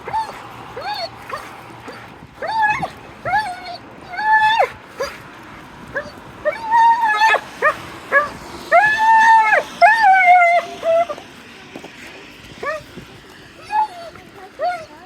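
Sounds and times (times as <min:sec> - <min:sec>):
dog whining and yelping: 0:00.0 - 0:05.2, 0:05.9 - 0:11.2, 0:12.6 - 0:12.9, 0:13.6 - 0:15.0.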